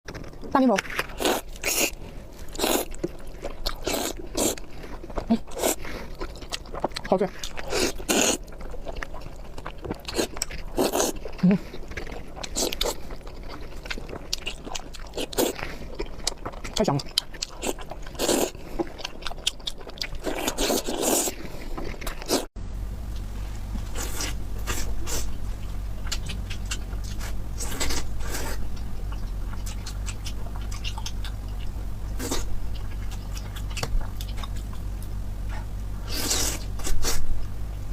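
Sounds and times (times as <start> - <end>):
person chewing bread: 0.1 - 22.5, 23.8 - 37.3
low hum: 21.4 - 37.9.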